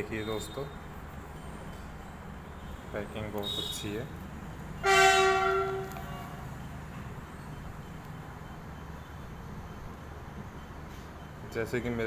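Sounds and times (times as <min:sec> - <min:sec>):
horn blast: 0:04.8 - 0:06.2.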